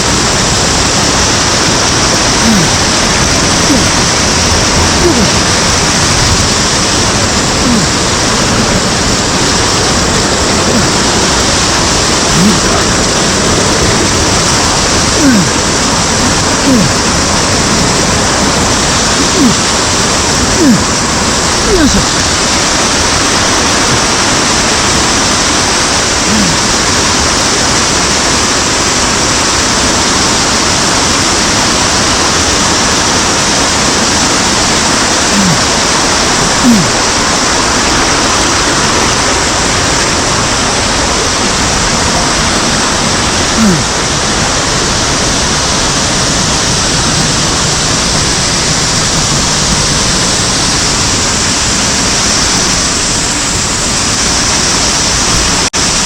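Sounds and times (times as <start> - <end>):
stream water cascading: 0.0 - 56.0.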